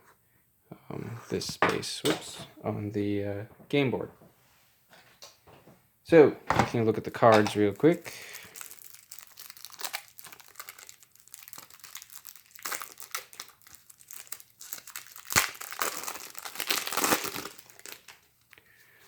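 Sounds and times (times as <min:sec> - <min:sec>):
plastic shrink wrap crinkling: 0:06.7 - 0:18.6.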